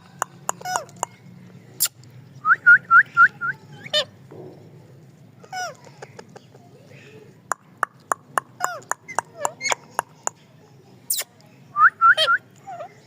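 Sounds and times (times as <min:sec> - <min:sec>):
parrot chirps and squawks: 0:00.5 - 0:01.1, 0:05.4 - 0:05.8, 0:08.6 - 0:10.1.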